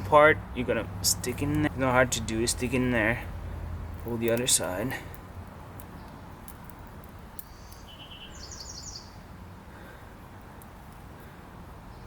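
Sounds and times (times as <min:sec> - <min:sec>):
low outdoor rumble: 0:00.0 - 0:12.0
small bird chirping trills: 0:05.8 - 0:09.3.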